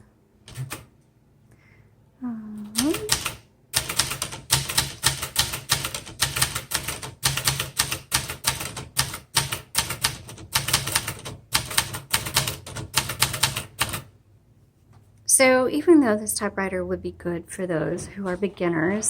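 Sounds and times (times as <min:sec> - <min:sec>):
typewriter key strikes: 0:00.5 - 0:00.9, 0:02.8 - 0:14.0.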